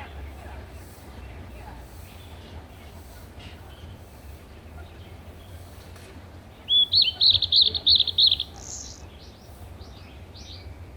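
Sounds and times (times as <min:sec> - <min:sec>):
bird chirping: 0:06.5 - 0:10.7.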